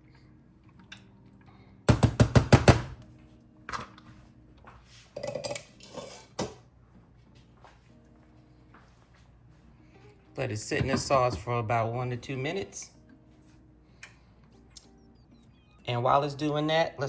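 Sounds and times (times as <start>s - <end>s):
cookware knocks: 10.8s - 11.5s.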